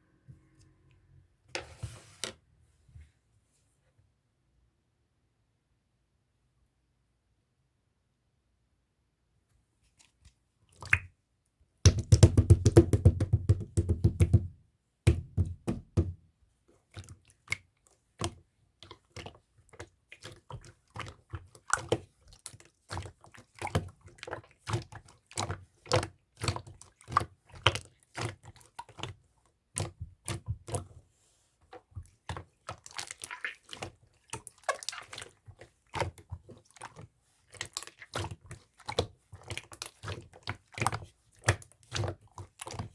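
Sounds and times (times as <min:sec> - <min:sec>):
hands squishing slime: 0:10.0 - 0:11.1, 0:11.9 - 0:14.5, 0:16.8 - 0:42.9.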